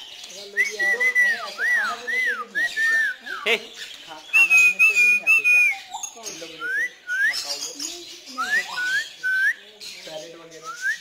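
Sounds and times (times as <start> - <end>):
bird whistling: 0.5 - 3.5, 4.3 - 9.7, 10.6 - 11.0.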